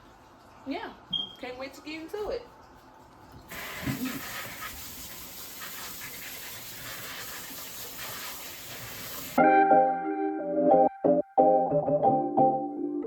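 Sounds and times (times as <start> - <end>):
music: 9.4 - 13.0.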